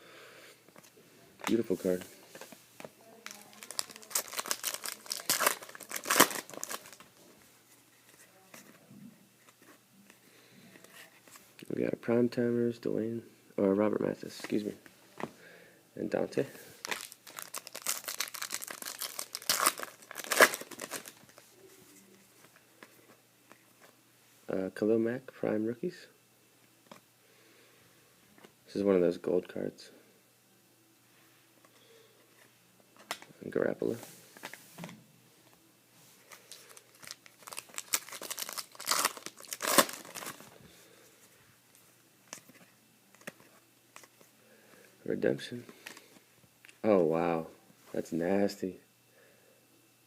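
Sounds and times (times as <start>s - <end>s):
foil wrapper crinkling and tearing: 3.2s - 7.1s, 16.8s - 21.4s, 36.3s - 40.5s.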